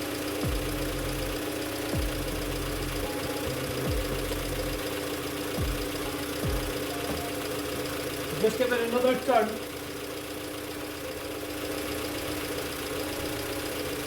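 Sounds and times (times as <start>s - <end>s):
car engine idling: 0.0s - 14.0s
power steering pump whine: 0.0s - 14.0s.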